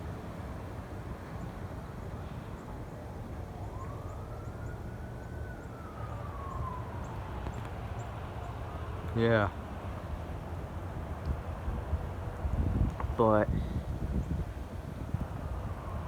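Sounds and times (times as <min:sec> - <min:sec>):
distant siren wailing: 0:02.1 - 0:11.0, 0:15.0 - 0:16.0.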